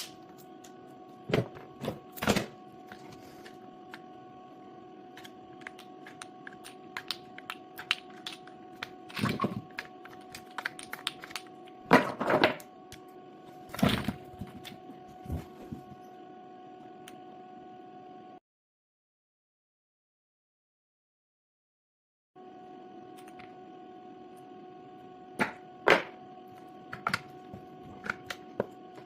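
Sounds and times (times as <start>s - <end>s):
steady electrical hum: 0.0s - 18.4s.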